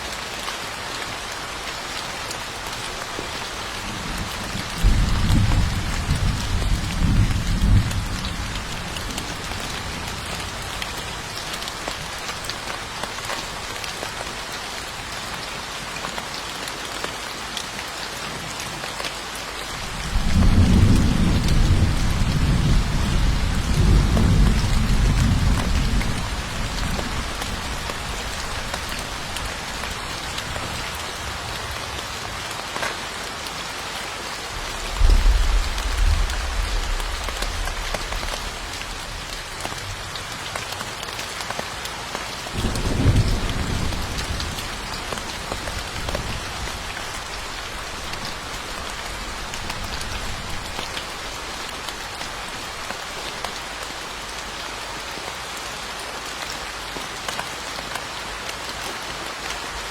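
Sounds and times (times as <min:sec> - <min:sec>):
steady rain: 0:00.0 - 0:59.9
thunder rolling: 0:34.8 - 0:39.1.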